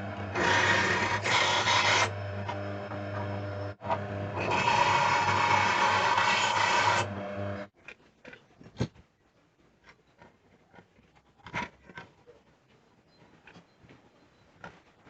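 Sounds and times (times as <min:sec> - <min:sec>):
drill press grinding: 0:00.0 - 0:07.7.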